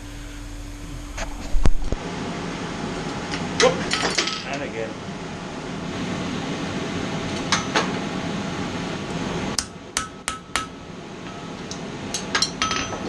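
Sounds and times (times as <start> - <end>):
hammer striking hot steel: 9.6 - 13.0.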